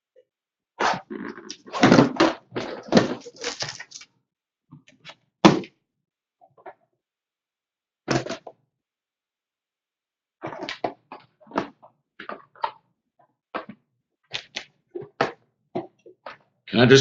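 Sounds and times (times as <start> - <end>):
cardboard scraping: 0.8 - 4.0.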